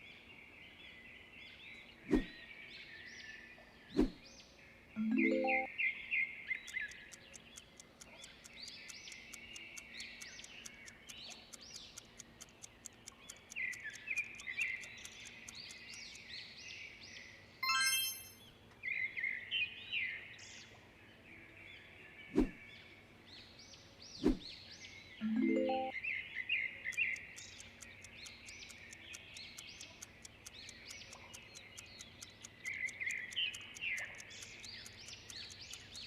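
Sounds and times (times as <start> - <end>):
small birds chirping: 0.0 - 36.0
bright chime: 5.0 - 5.7, 17.6 - 18.5, 25.2 - 26.0
fast even ticking: 6.6 - 16.3, 26.9 - 36.0.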